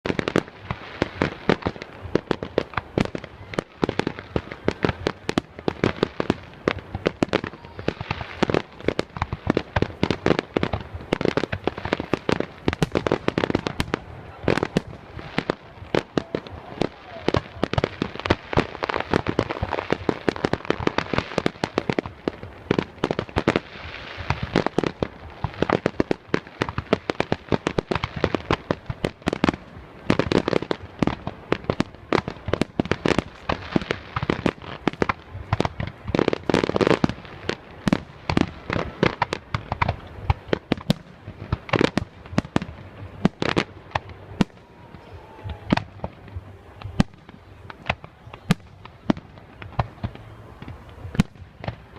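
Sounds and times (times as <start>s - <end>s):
fireworks bangs and crackling: 0.0s - 51.9s.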